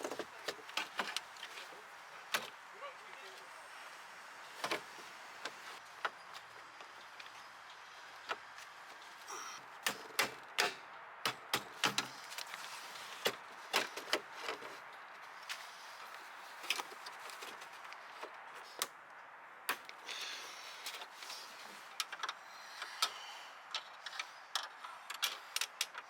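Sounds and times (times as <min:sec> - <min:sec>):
tools and parts clicking: 0:21.8 - 0:26.0.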